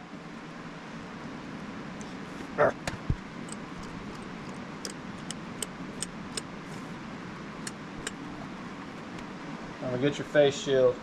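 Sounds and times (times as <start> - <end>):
steady shop hum: 0.0 - 10.2
light metallic clicks and taps: 2.9 - 6.5, 7.6 - 9.3.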